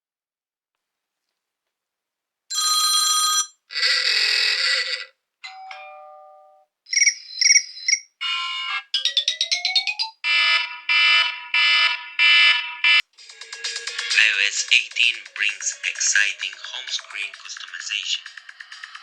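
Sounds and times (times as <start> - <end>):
electronic ringtones and alerts: 6.9 - 19.0.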